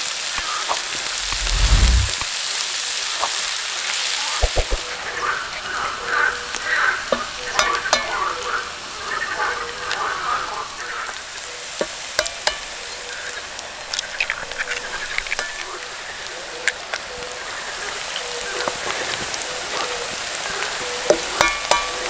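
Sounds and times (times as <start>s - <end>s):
food sizzling in a frying pan: 5.7s - 22.0s.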